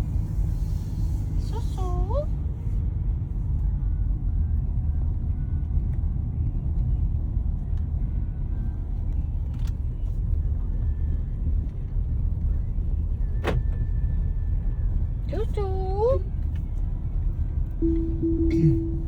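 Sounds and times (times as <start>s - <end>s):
car cabin rumble: 15.3s - 19.0s
brief sharp sound: 17.8s - 19.0s.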